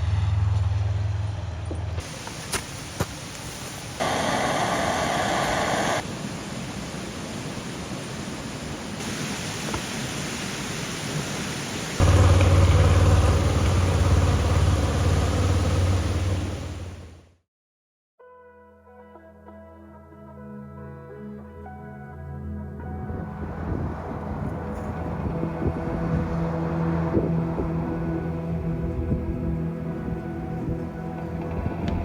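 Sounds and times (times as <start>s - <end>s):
steady hiss: 2.0s - 14.6s
motorcycle engine idling: 12.0s - 17.2s.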